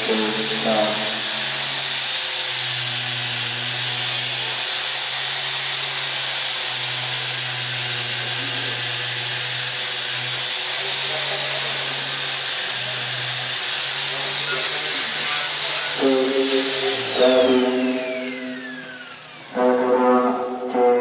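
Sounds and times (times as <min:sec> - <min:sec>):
high whine: 0:00.0 - 0:02.0, 0:14.1 - 0:21.0
cleaning equipment hissing: 0:00.0 - 0:20.6
low motor hum: 0:15.0 - 0:21.0.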